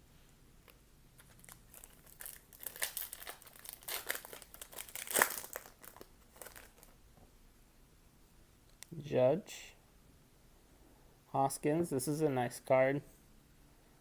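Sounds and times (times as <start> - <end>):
foil wrapper crinkling: 1.2 - 7.0.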